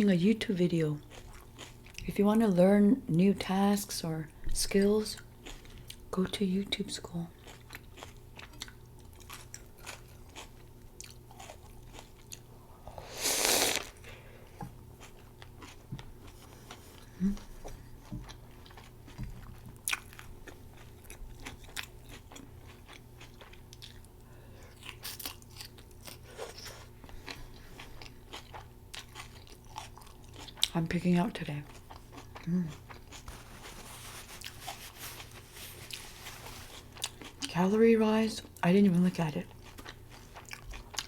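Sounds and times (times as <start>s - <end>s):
close chewing with mouth clicks: 1.0s - 2.1s, 5.1s - 6.1s, 7.3s - 12.5s, 13.6s - 30.9s, 31.6s - 37.6s, 39.5s - 41.0s.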